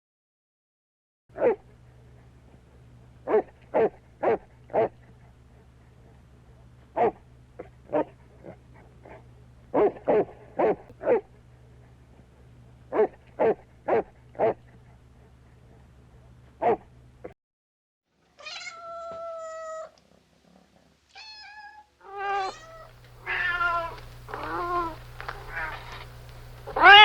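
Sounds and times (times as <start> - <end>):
dog barking: 1.4 - 1.6, 3.2 - 5.2, 7.0 - 11.3, 12.9 - 14.8, 16.6 - 16.9
dog yipping: 21.2 - 26.0, 26.7 - 27.0.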